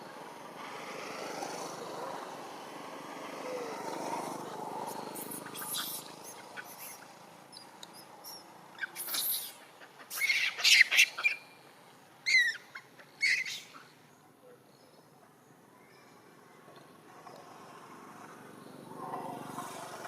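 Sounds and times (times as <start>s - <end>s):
monkeys squealing: 5.2s - 7.1s, 8.3s - 11.4s, 12.2s - 13.8s.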